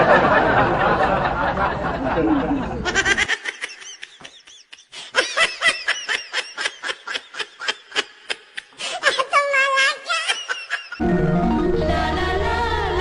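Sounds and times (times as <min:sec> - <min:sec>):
high-pitched giggling laughter: 0:01.9 - 0:11.0
song playing: 0:11.0 - 0:13.0.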